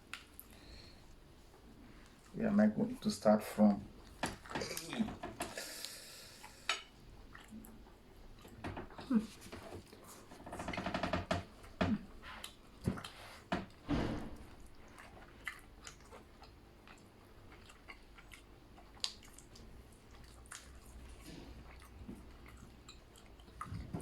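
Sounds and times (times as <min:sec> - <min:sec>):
people chewing food: 0:00.0 - 0:24.0
wet eating smacks and clicks: 0:00.1 - 0:00.6, 0:04.0 - 0:10.1, 0:11.7 - 0:13.8, 0:14.5 - 0:24.0.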